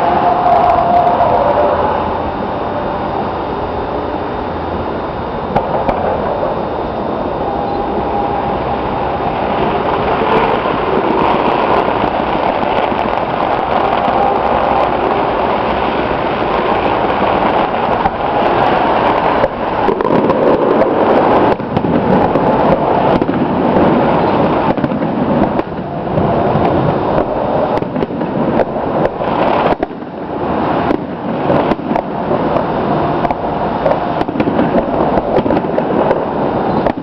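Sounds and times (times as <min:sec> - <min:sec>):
dense firework crackle: 0:00.0 - 0:37.0
firework shells bursting: 0:05.5 - 0:06.5, 0:08.0 - 0:37.0.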